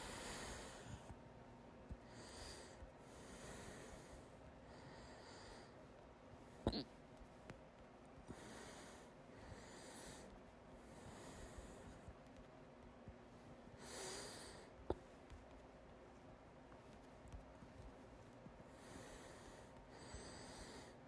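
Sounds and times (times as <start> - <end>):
person breathing quietly: 0.0 - 1.2, 1.9 - 6.8, 8.2 - 12.2, 13.3 - 15.2, 17.6 - 21.0
sharp hiccup: 6.7 - 6.9.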